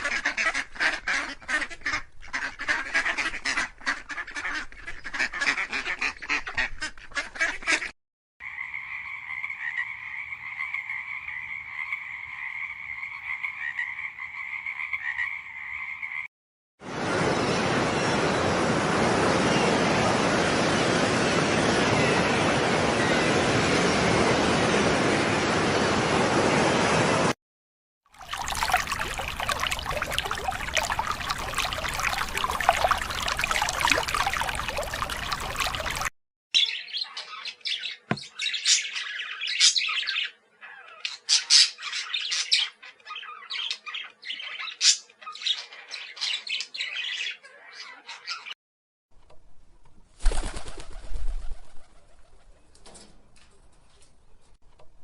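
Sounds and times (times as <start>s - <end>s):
birds chirping: 28.2s - 40.9s.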